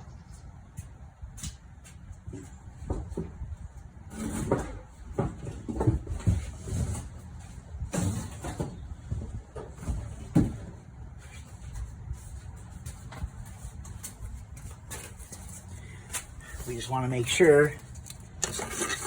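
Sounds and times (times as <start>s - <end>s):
cardboard scraping and rustling: 4.1s - 8.8s, 18.3s - 19.0s.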